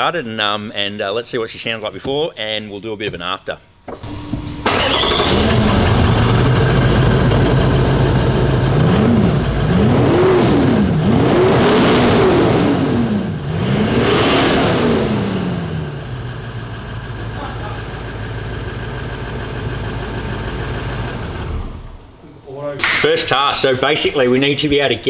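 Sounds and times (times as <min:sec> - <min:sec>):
diesel engine revving: 0:04.0 - 0:22.2.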